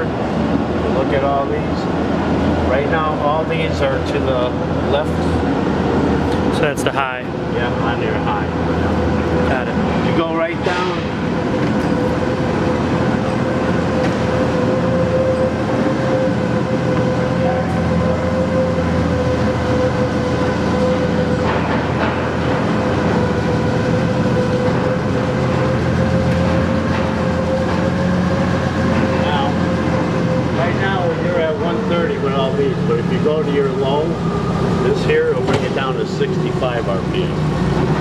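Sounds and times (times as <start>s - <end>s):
lathe running with rumble and whine: 0.0s - 38.0s.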